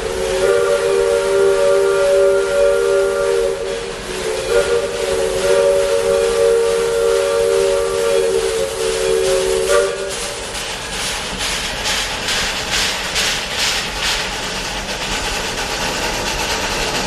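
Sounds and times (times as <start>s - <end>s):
steam locomotive chime whistle: 0.0s - 10.5s
hiss of steam: 0.0s - 17.0s.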